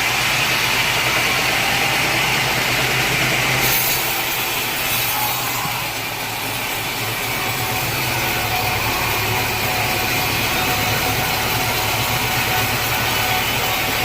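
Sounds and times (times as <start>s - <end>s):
low machine hum: 0.0s - 14.0s
saw cutting through log: 0.0s - 14.0s.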